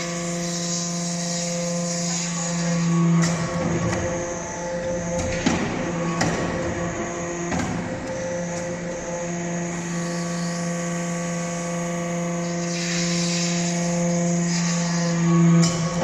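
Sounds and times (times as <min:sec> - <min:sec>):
hydraulic pump hum: 0:00.0 - 0:16.0
hiss: 0:12.4 - 0:16.0.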